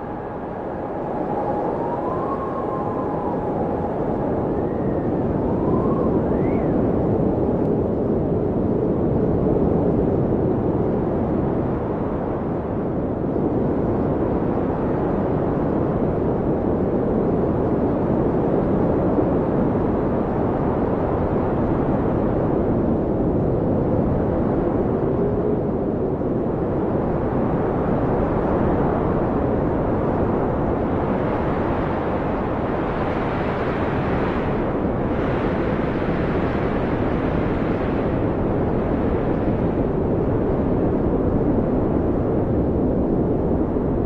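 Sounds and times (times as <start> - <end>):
wind rushing: 0.0 - 7.5, 31.0 - 44.0
howling wind whistles: 0.0 - 44.0.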